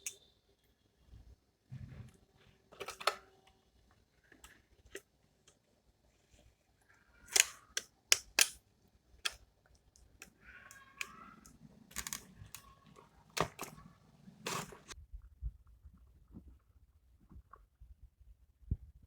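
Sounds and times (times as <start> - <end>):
scraping rub: 13.8 - 15.0.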